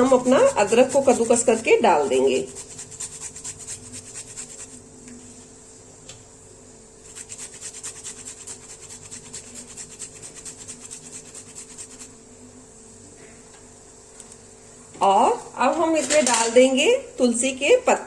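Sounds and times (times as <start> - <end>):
ginger rasping on hand grater: 0.0 - 4.8, 7.0 - 12.1.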